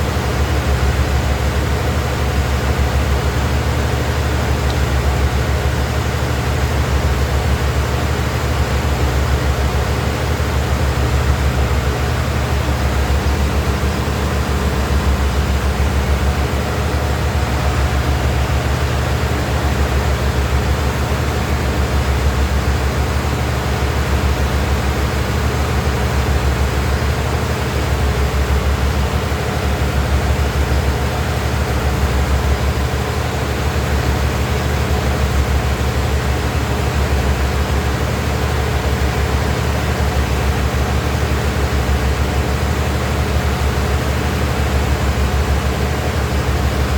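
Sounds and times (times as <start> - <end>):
loud low machine drone: 0.0 - 46.9.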